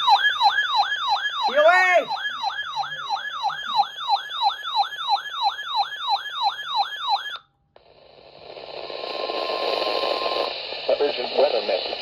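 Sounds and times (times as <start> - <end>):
electronic siren yelping: 0.0 - 7.4
radio static hiss: 8.0 - 12.0.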